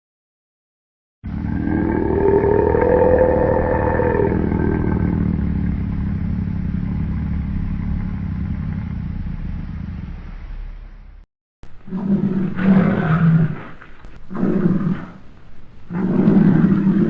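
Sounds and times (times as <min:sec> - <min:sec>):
elephant call: 0:01.3 - 0:05.8
long low rumble: 0:01.3 - 0:11.9.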